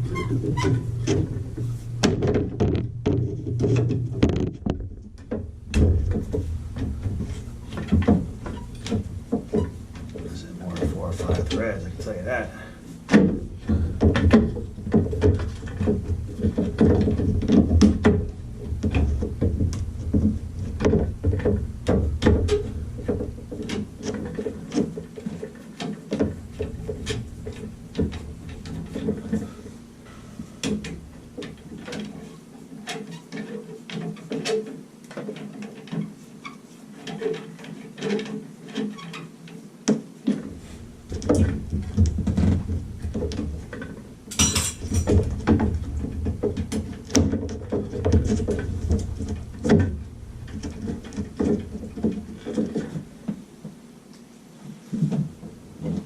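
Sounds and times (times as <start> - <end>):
low rumble: 0.0 - 8.8
hand tools clicking and scraping: 44.3 - 45.3.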